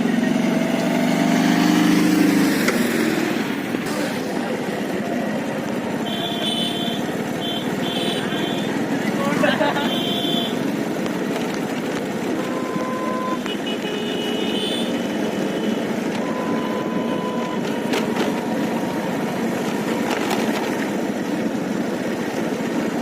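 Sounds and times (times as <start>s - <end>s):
road traffic: 0.0s - 23.0s.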